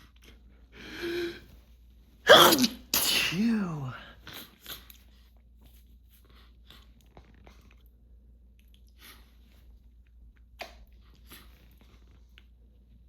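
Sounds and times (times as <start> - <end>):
person sneezing: 2.3 - 4.1
person sniffing: 2.3 - 4.5
small mouth clicks: 10.4 - 11.5.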